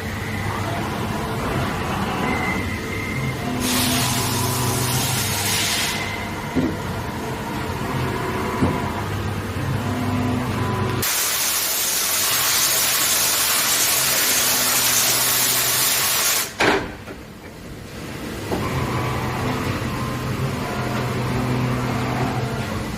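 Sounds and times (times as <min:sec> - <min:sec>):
industrial machine humming: 0:00.0 - 0:22.9
loud even hiss: 0:11.0 - 0:16.6.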